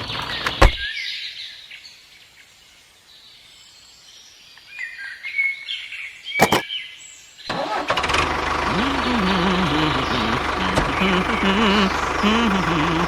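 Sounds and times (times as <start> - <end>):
sharp click: 6.4 - 6.6
birds chirping: 8.4 - 13.0.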